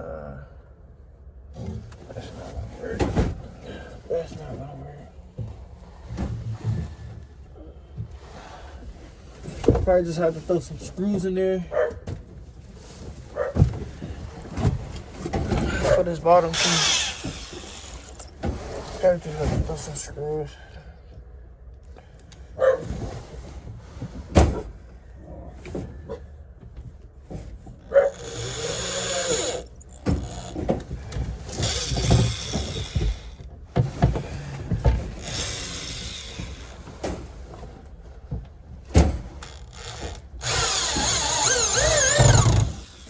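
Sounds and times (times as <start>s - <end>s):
power drill driving screws: 16.5s - 18.4s, 28.1s - 30.6s, 31.5s - 33.4s, 35.2s - 36.8s, 39.4s - 43.0s.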